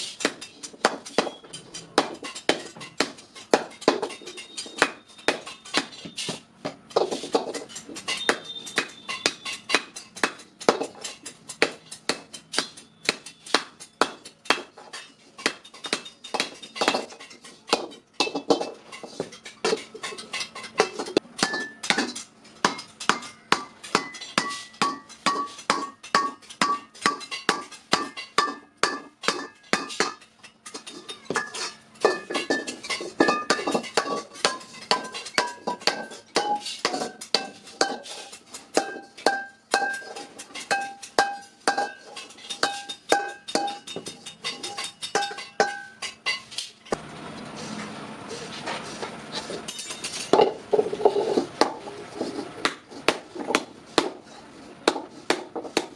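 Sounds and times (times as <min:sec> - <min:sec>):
rough scraping on metal: 0:00.0 - 0:21.2, 0:29.3 - 0:55.9
hammer ringing on iron pan: 0:07.9 - 0:18.7, 0:19.3 - 0:46.4.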